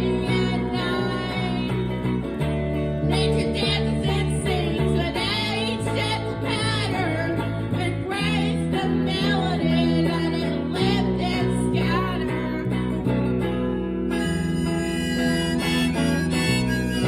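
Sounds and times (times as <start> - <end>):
acoustic guitars with reverb: 0.0 - 17.0
woman singing blues: 0.0 - 17.0.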